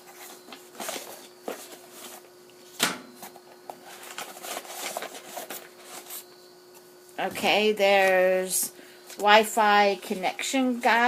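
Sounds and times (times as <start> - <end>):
paper and cardboard rustling: 0.0 - 2.3, 3.2 - 6.3.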